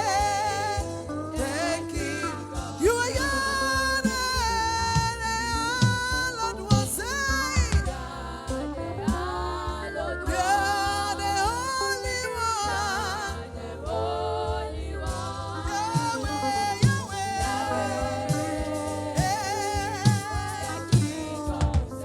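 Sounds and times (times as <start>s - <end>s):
band with bass and drums: 0.0s - 22.0s
singer's wordless vocal runs: 0.0s - 22.0s.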